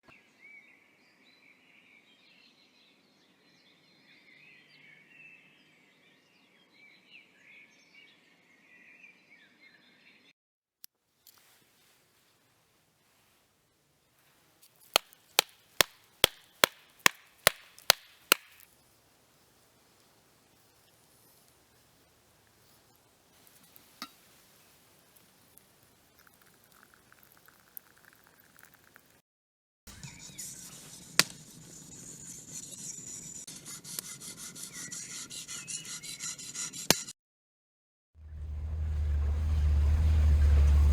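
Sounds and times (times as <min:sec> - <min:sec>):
sharp chopping blows: 0:15.0 - 0:18.7
knife rasping on sharpening stone: 0:30.0 - 0:37.1.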